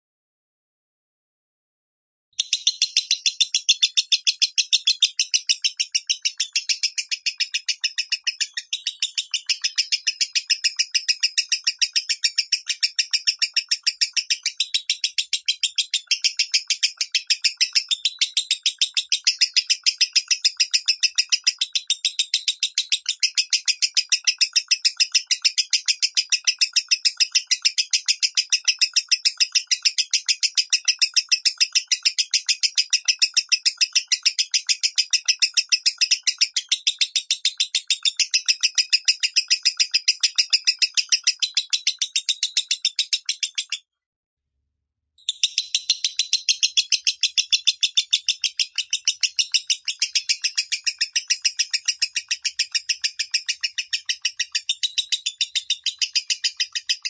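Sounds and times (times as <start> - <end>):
lovebird chirping rapidly: 2.4 - 43.8, 45.2 - 57.0.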